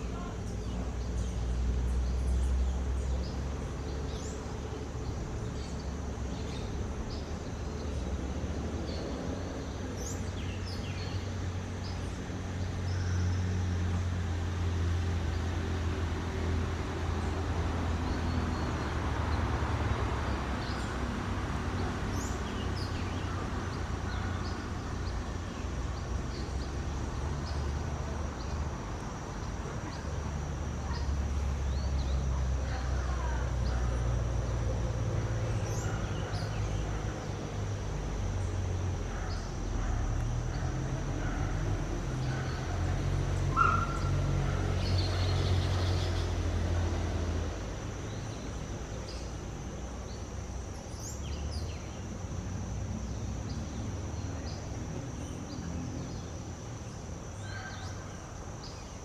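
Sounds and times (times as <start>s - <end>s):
birds chirping: 16.9s - 47.1s.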